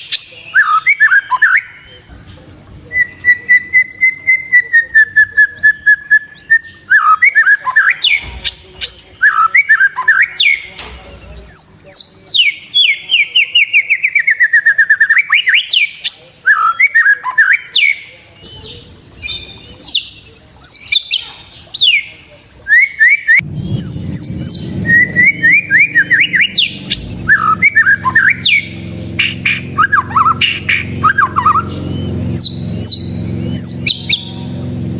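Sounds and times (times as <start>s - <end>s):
songbird singing whistled notes: 0.0s - 2.1s, 2.8s - 34.9s
steady low hum: 23.4s - 34.9s.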